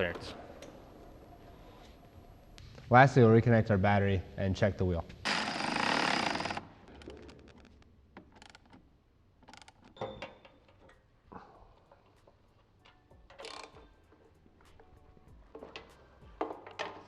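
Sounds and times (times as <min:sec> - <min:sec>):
wrench clicking on metal: 0:12.8 - 0:14.8.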